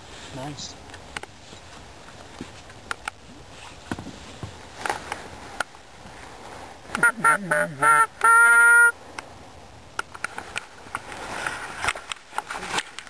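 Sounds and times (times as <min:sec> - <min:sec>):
goose call clucking: 0:07.0 - 0:08.9
goose call honk: 0:07.0 - 0:08.9.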